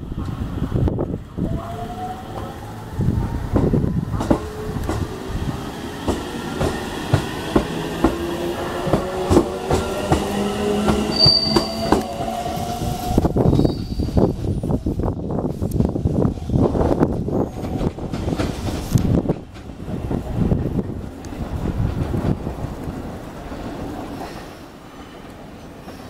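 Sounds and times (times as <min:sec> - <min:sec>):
wheels clacking on rail joints: 0:06.0 - 0:12.2
high squeal: 0:10.6 - 0:14.4.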